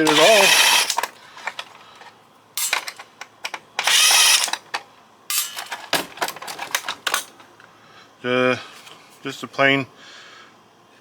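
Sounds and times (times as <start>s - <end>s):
cordless drill whirring: 0.0s - 1.6s, 3.8s - 4.8s
quick clicks and rattles: 0.0s - 7.6s.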